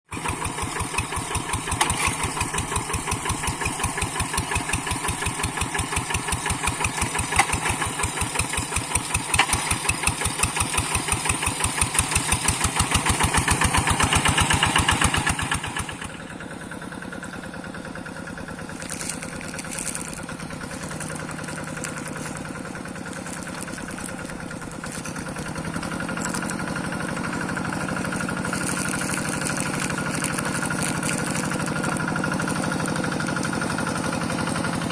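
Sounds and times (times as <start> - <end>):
hand tractor diesel engine chugging: 0.1 - 34.9.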